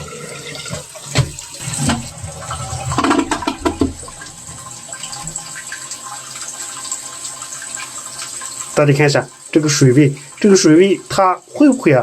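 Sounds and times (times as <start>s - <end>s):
toilet flushing: 0.0s - 12.0s
knocks in pipes: 0.7s - 2.1s, 2.9s - 4.2s.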